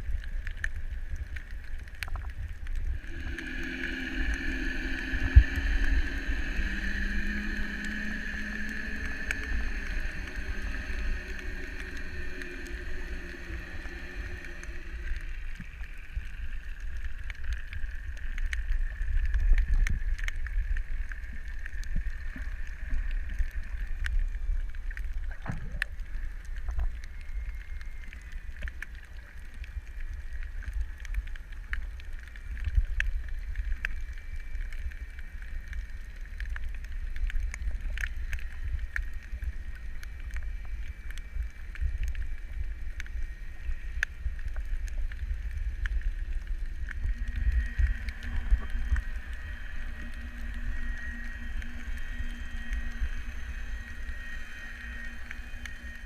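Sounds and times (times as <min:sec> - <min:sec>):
low rumble of moving water: 0:00.0 - 0:56.0
sharp clicks underwater: 0:00.0 - 0:56.0
steady high hum: 0:00.0 - 0:56.0.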